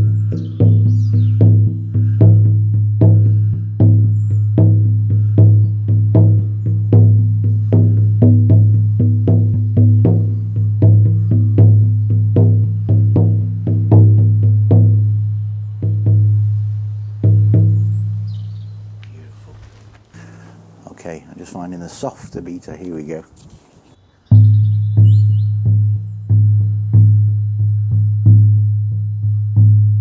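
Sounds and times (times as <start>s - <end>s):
frame drum beaten steadily: 0.0s - 18.3s.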